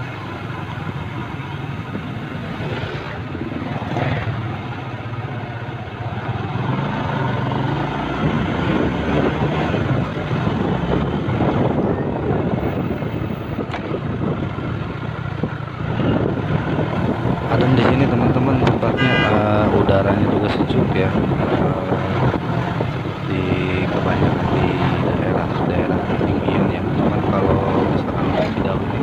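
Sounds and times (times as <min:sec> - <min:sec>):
vehicle engine running: 0:00.0 - 0:02.7, 0:17.0 - 0:29.0
road and wind noise: 0:00.0 - 0:29.0.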